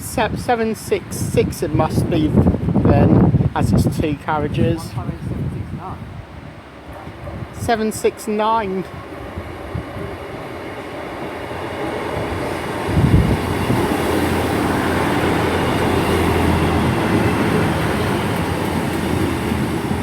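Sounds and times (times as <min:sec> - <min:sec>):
diesel train engine hum: 0:00.0 - 0:20.0
train wheels: 0:09.1 - 0:20.0.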